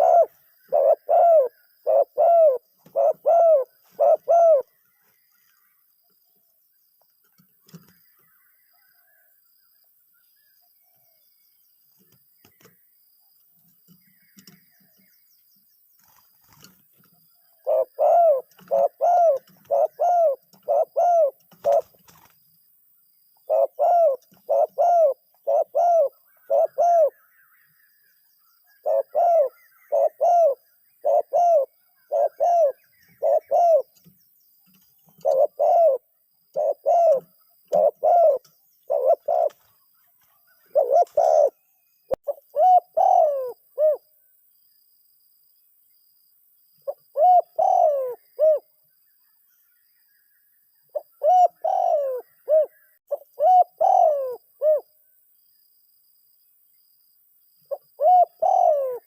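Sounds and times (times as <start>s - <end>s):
dove cooing: 0.0s - 4.8s, 17.6s - 22.3s, 23.4s - 27.2s, 28.8s - 34.1s, 35.1s - 39.8s, 40.6s - 41.6s, 42.2s - 44.0s, 46.9s - 48.7s, 51.0s - 54.9s, 57.7s - 59.0s.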